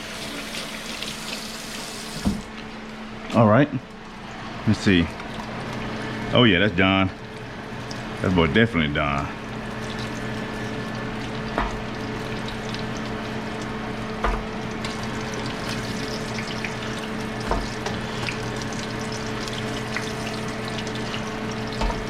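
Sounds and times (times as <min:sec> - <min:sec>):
low steady hum: 0:02.6 - 0:22.0
fish frying in hot oil: 0:05.2 - 0:08.6, 0:09.3 - 0:22.0.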